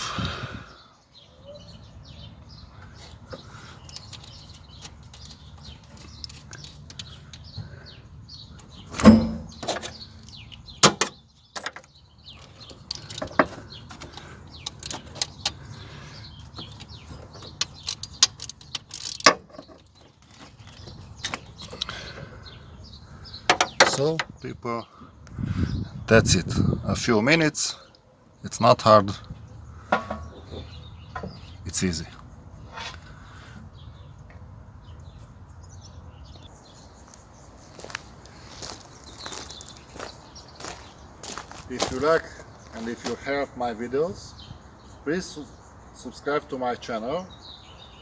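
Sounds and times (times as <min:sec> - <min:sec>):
metal hand tools clinking: 0:14.6 - 0:15.4, 0:17.6 - 0:20.0.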